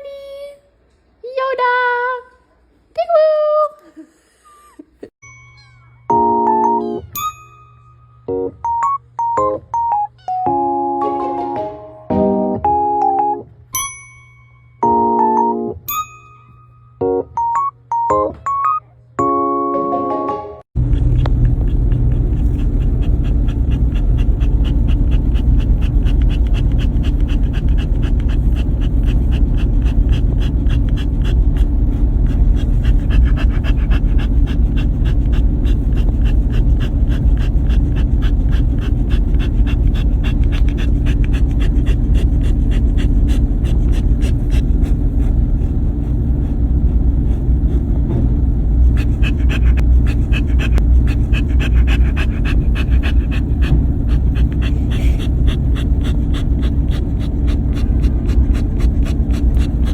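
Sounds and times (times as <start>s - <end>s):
steady low rumble: 20.8s - 59.9s
dog panting: 21.0s - 59.9s.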